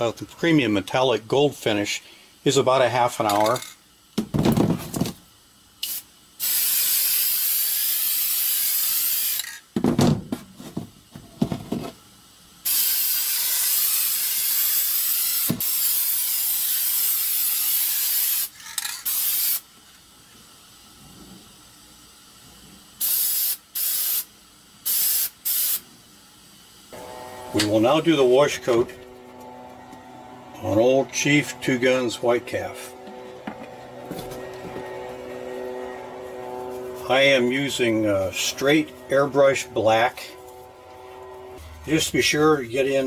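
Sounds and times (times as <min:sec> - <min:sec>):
paint spray hissing: 0:05.8 - 0:09.4, 0:12.6 - 0:19.7, 0:23.0 - 0:26.0
short spray bursts: 0:05.8 - 0:09.4, 0:12.6 - 0:19.7, 0:23.0 - 0:26.0, 0:34.0 - 0:42.0.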